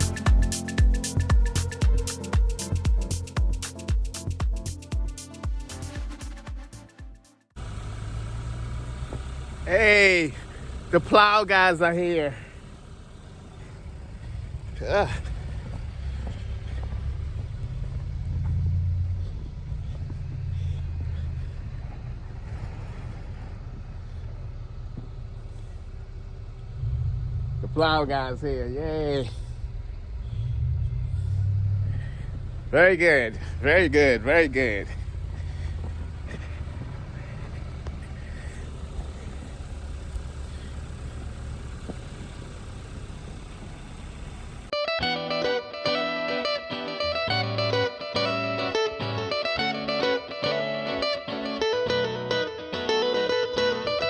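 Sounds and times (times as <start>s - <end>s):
snow plow truck engine rumble: 7.6s - 44.8s.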